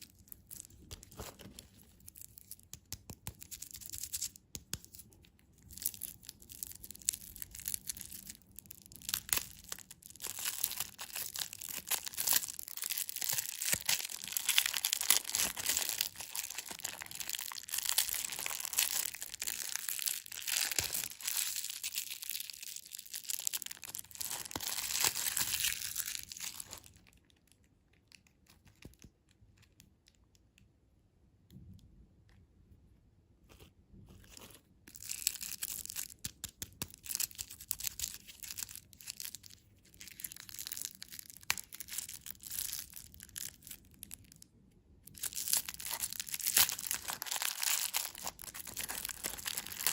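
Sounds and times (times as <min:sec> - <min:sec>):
candy wrapper tearing and crinkling: 0:00.0 - 0:29.8, 0:34.9 - 0:49.9
faint handling sounds: 0:31.7 - 0:35.0.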